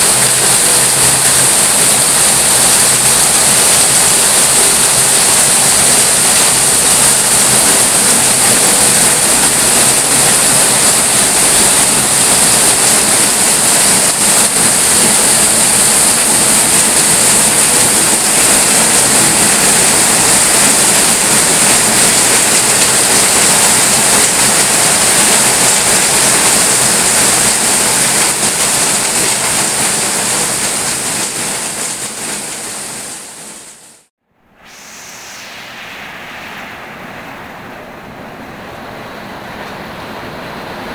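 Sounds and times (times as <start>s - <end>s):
heavy rain falling: 0.0s - 34.1s.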